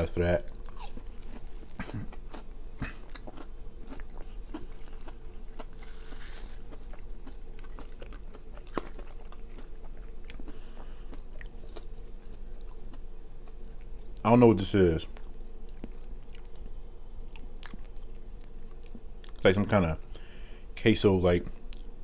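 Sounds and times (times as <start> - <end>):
crunchy chewing: 0.4 - 13.8.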